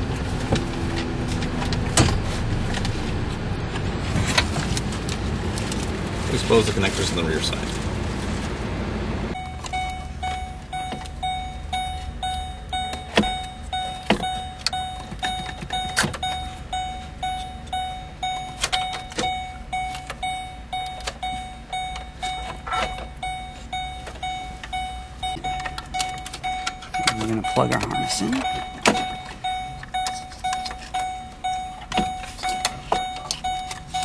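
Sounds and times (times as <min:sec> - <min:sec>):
vehicle warning chime beeping: 0:09.3 - 0:34.0.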